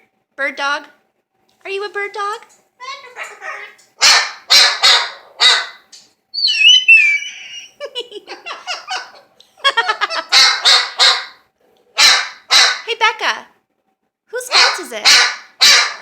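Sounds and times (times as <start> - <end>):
bird imitating dog barks: 2.8 - 7.8, 8.4 - 9.3, 10.1 - 11.4, 12.0 - 12.9, 14.5 - 16.0
bird gliding whistle: 6.4 - 7.8
bird choppy calls: 6.4 - 9.2.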